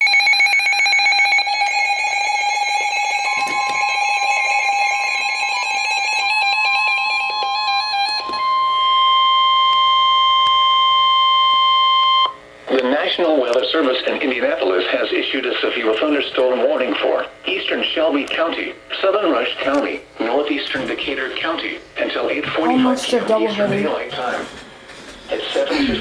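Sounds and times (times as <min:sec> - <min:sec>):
steady alarm tone: 0:00.0 - 0:12.4, 0:20.2 - 0:26.0.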